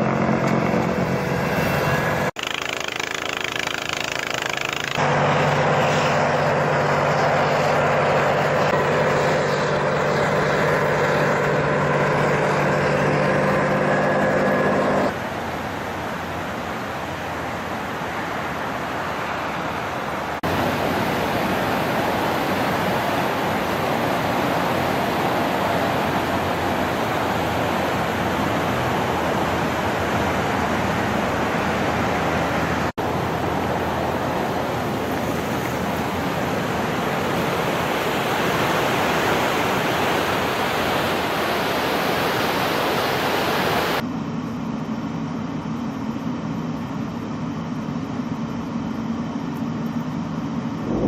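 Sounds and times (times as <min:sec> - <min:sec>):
wind blowing hard: 0:50.8 - 0:51.0.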